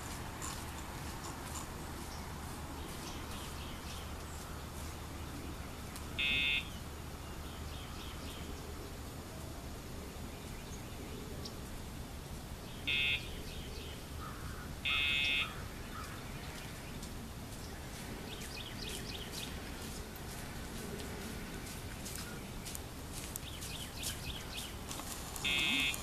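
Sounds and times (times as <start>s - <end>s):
collar pager buzzing: 25.4s - 26.0s.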